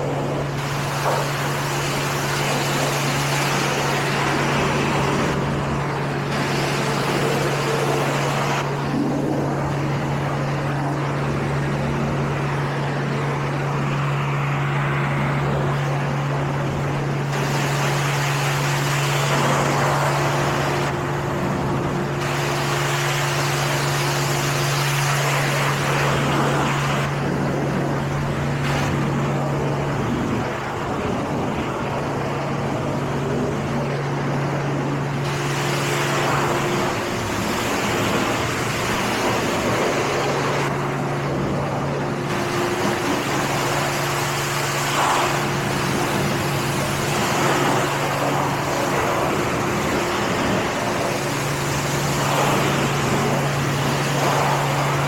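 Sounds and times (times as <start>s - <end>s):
low machine hum: 0.0s - 55.0s
water spray hissing on car: 22.2s - 27.1s, 35.2s - 40.7s, 42.3s - 55.0s.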